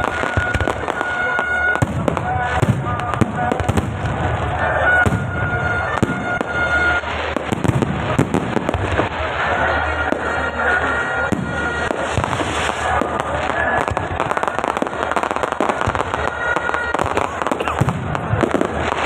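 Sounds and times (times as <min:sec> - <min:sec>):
fireworks crackling and popping: 0:00.0 - 0:19.0.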